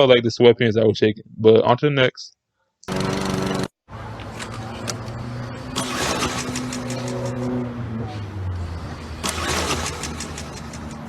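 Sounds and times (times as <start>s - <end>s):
lawn mower engine running: 2.9s - 3.7s, 4.3s - 7.5s, 8.9s - 11.0s
rasping pull-start: 2.9s - 3.7s, 5.8s - 7.5s, 9.0s - 11.0s.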